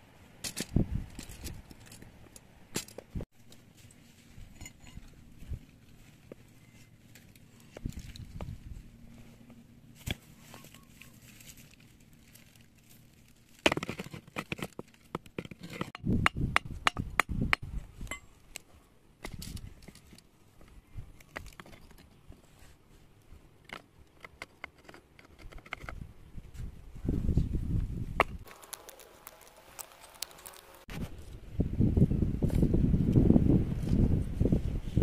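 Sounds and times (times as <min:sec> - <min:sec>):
stones and earth being shifted: 0:09.9 - 0:16.0, 0:28.2 - 0:31.3.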